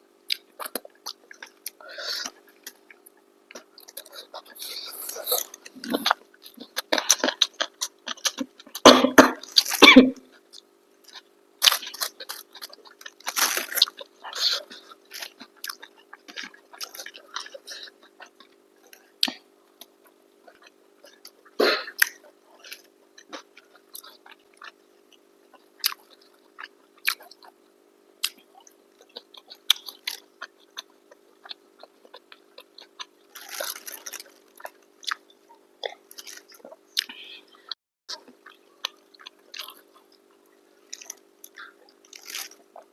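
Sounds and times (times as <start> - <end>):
faint steady hum: 0.0 - 42.9
chewing and mouth sounds: 0.3 - 27.6, 28.2 - 37.4, 38.1 - 42.9
person coughing: 8.8 - 10.2, 21.6 - 22.0.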